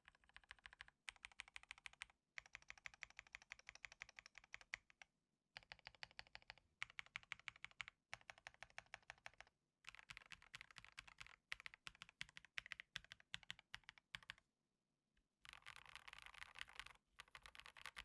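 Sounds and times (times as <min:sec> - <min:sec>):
keyboard typing: 0:15.5 - 0:18.0.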